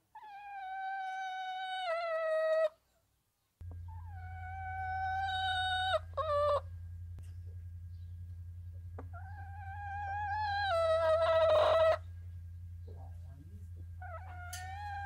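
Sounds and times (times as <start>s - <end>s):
low steady hum: 3.6s - 15.0s
hen calling: 3.7s - 6.7s, 9.0s - 12.2s, 13.9s - 15.0s.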